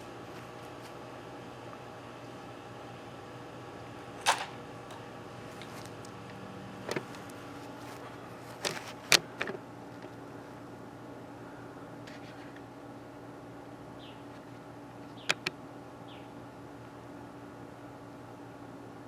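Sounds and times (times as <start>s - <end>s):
air rifle firing crack: 4.2s - 4.6s.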